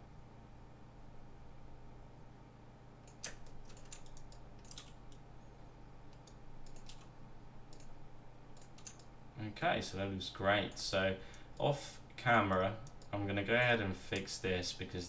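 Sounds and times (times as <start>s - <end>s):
faint electrical hum: 0.0s - 15.0s
computer mouse and keyboard clicks: 3.1s - 5.2s, 6.1s - 7.1s, 7.7s - 9.1s.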